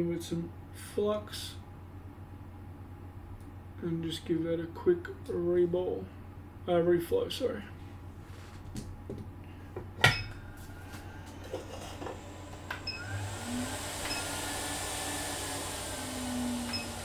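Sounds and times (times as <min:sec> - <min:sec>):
hot air blower hissing: 0:10.6 - 0:17.0.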